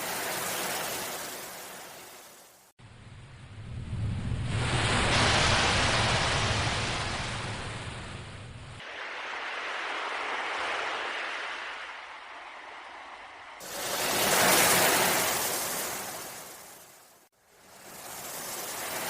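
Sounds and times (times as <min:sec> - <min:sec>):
sea waves washing in: 0:00.0 - 0:02.7, 0:03.5 - 0:19.0
deep rumble: 0:02.8 - 0:08.8.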